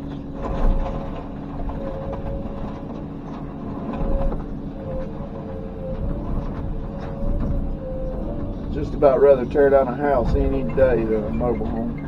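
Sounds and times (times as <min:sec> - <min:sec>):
excavator engine drone and whine: 0:00.0 - 0:12.0.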